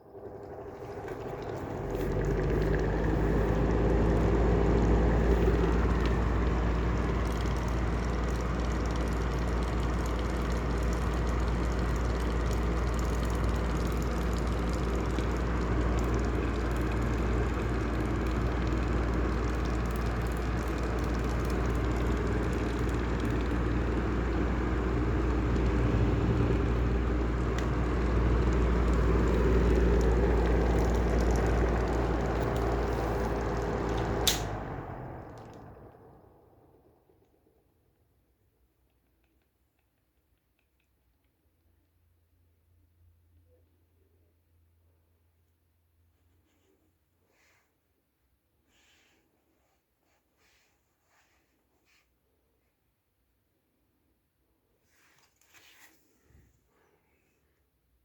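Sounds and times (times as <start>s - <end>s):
exhaust fan motor hum: 0.0s - 37.6s.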